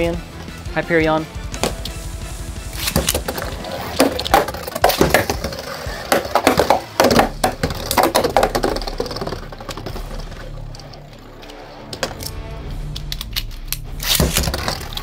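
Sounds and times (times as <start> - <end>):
sharp plastic hits: 2.8 - 11.0, 14.0 - 15.0
spinning tops clashing: 2.8 - 12.3.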